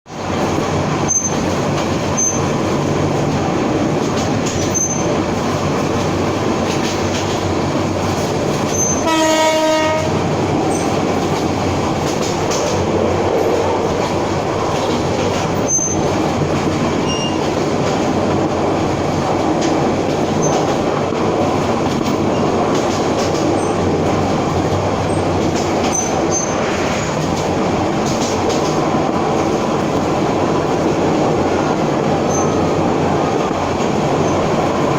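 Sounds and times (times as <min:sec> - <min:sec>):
train wheels rumbling: 0:00.1 - 0:34.9
train horn blast: 0:09.0 - 0:10.2.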